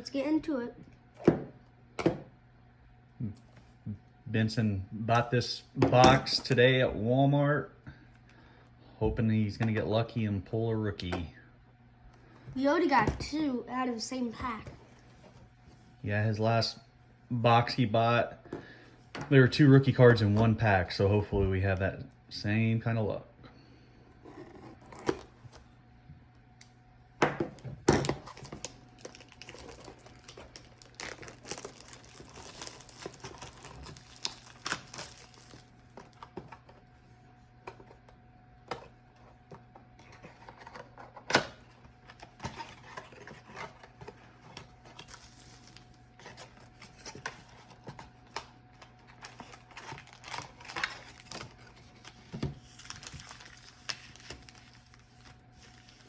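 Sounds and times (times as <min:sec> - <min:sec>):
faint steady hum: 0:00.0 - 0:56.0
wrapper crinkling and tearing: 0:28.1 - 0:36.2, 0:49.0 - 0:56.0.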